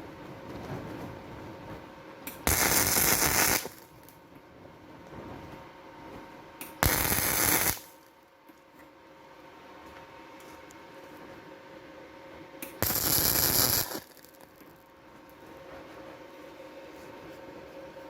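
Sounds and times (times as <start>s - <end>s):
electric arc welding crackle: 2.3s - 4.2s, 6.6s - 8.1s, 12.6s - 14.8s.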